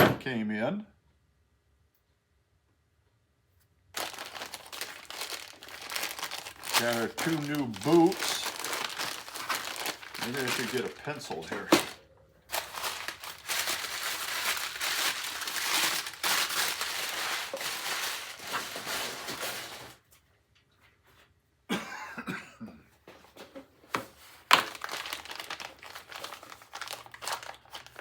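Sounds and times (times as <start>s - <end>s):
packaging crinkling: 4.0s - 20.0s, 24.1s - 28.0s.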